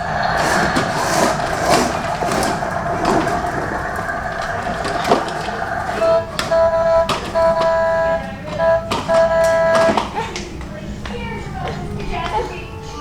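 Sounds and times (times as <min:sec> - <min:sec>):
toy spinning jacks whirring: 0:00.0 - 0:10.0
steady humming tone: 0:00.0 - 0:13.0.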